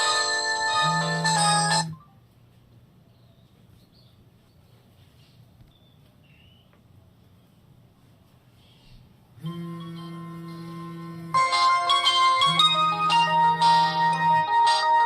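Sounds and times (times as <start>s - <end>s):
phone ringtone chiming melody: 0.0s - 2.0s, 11.4s - 15.0s
faint background noise: 0.0s - 15.0s.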